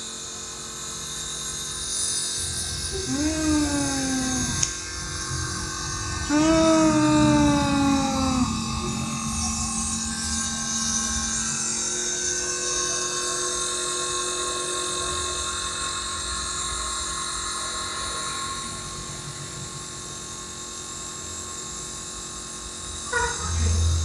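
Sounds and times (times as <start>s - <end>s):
person speaking: 3.0s - 4.7s, 6.3s - 8.6s.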